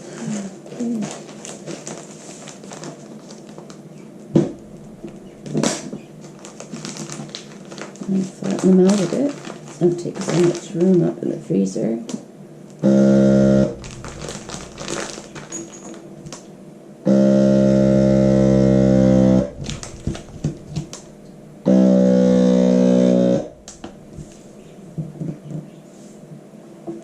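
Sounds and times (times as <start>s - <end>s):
plastic bag rustling: 0.0s - 11.2s, 13.5s - 16.5s, 19.4s - 21.6s, 23.4s - 25.5s
vacuum sealer motor buzzing: 12.8s - 16.4s, 17.1s - 25.0s.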